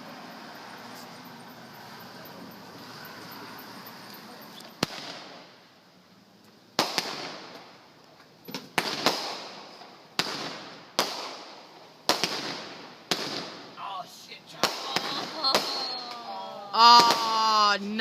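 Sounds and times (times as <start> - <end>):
fireworks bangs: 4.7 - 5.7, 6.7 - 7.9, 8.6 - 18.0.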